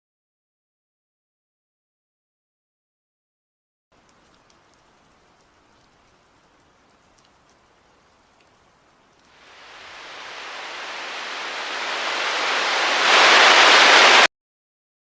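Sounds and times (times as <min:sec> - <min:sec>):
even hiss of noise: 0:09.2 - 0:14.3.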